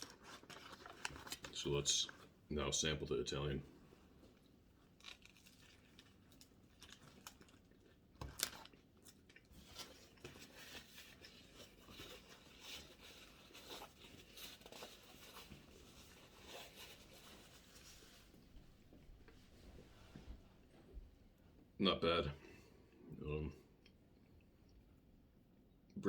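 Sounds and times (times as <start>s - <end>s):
person chewing sandwich: 0.0s - 1.5s, 4.0s - 19.0s.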